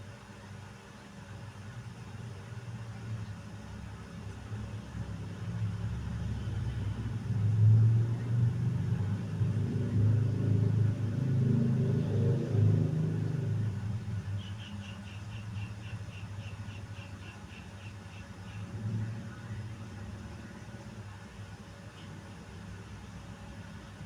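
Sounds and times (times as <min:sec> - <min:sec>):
motorcycle engine revving: 0:08.0 - 0:14.3.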